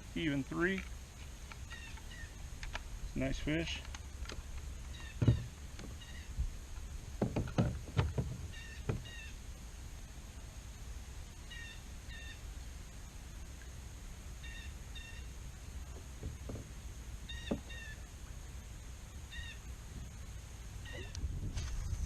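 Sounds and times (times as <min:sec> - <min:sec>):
bird paired calls: 0:01.6 - 0:02.4, 0:04.8 - 0:06.5, 0:08.2 - 0:09.4, 0:11.4 - 0:12.4, 0:14.4 - 0:15.4, 0:17.2 - 0:18.1, 0:19.2 - 0:19.7, 0:20.8 - 0:21.2
knocks against a kayak: 0:05.2 - 0:06.0, 0:07.2 - 0:09.1, 0:15.9 - 0:16.7.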